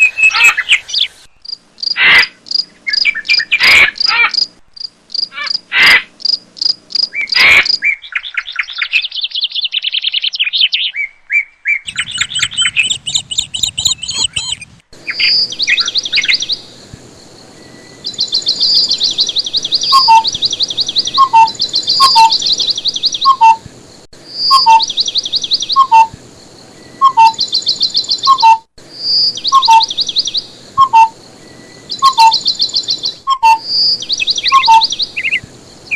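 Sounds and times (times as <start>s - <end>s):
bird trilling high phrases: 11.7s - 16.7s, 18.1s - 23.6s, 31.9s - 35.4s.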